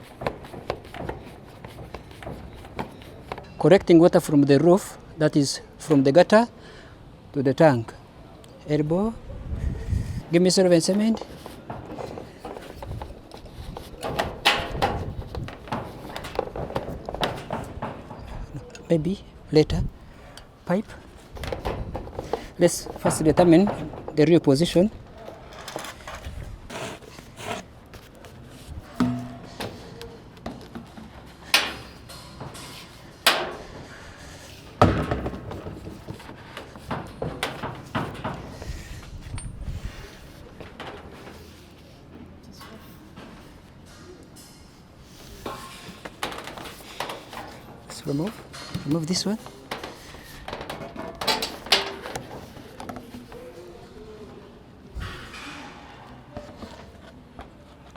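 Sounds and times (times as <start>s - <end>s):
pipe fittings knocking and scraping: 0.0s - 3.6s, 10.8s - 18.9s, 20.3s - 30.0s, 30.7s - 41.6s, 45.4s - 53.0s.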